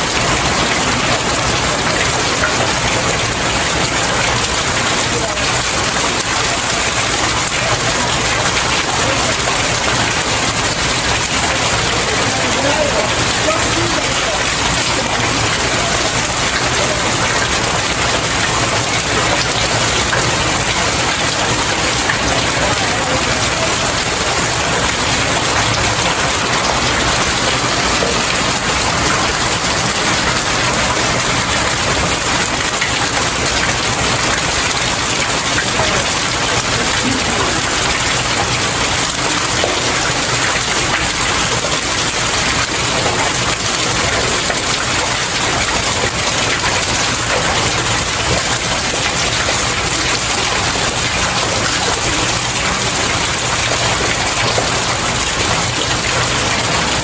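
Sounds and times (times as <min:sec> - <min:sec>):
rain splashing on stairs: 0:00.0 - 0:57.0.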